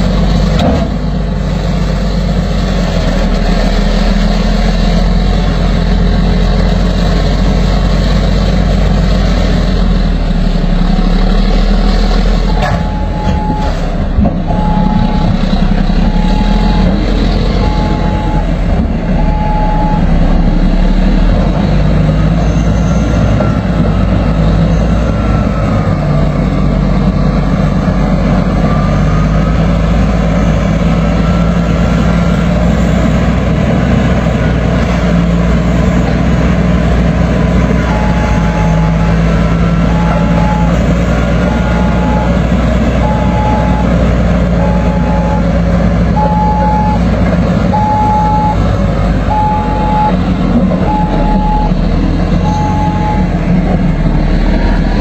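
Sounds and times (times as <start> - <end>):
bulldozer diesel engine running: 0.0 - 55.0
reversing alarm beeping: 12.4 - 13.8, 14.4 - 18.6, 19.2 - 21.2, 22.3 - 26.8, 37.8 - 47.1, 47.7 - 48.6, 49.3 - 50.2, 50.8 - 53.4.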